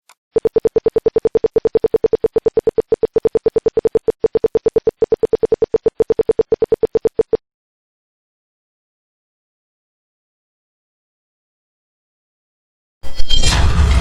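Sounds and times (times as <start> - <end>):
security alarm buzzer beeping: 0.4 - 7.4.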